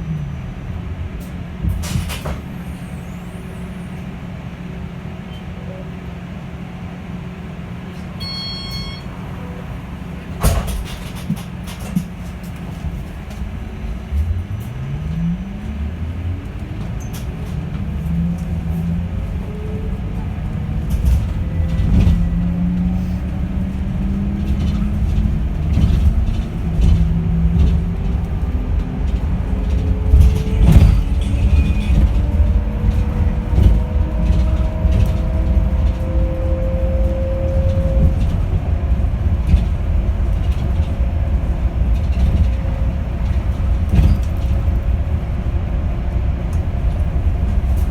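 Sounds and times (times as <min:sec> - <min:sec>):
low road rumble: 0:00.0 - 0:47.9
knocks and rattles: 0:16.7 - 0:45.3.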